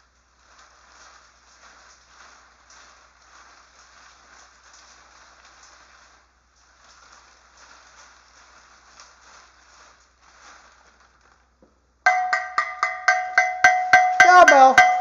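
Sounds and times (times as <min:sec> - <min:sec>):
cowbell struck rapidly: 0:12.1 - 0:15.0.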